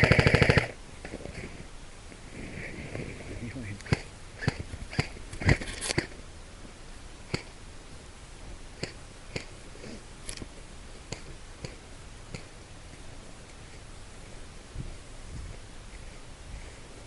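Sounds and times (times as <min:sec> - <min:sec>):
airsoft gun shots: 0:00.0 - 0:00.8, 0:03.9 - 0:06.1.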